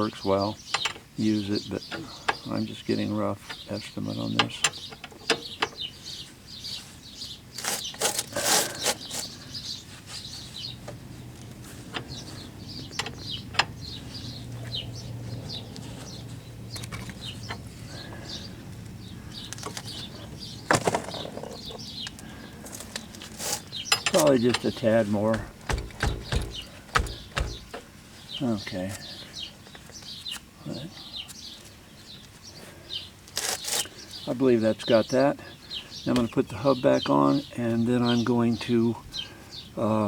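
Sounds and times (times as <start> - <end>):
socket wrench clicking: 12.9 - 13.9
metal tool knocks: 24.0 - 27.8.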